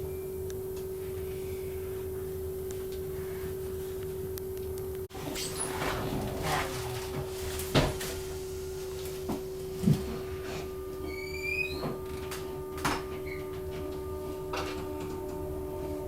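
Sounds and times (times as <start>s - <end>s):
train electrical hum: 0.0s - 16.0s
high rising squeak: 10.6s - 15.4s.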